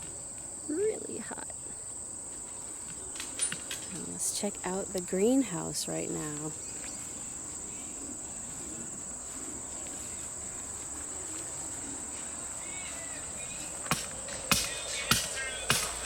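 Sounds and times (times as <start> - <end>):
insects droning: 0.0 - 16.0
music with percussive beat: 14.4 - 16.0.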